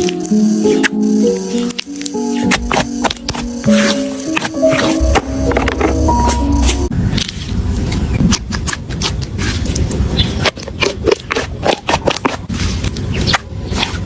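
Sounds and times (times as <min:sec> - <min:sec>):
background music: 0:00.0 - 0:06.9.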